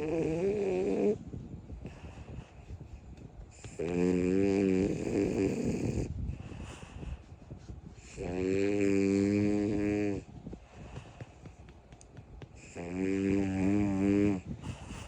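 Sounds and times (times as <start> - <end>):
dog snoring: 0.0 - 1.2, 3.5 - 6.1, 8.0 - 10.3, 12.5 - 15.0
dog breathing: 0.0 - 15.0.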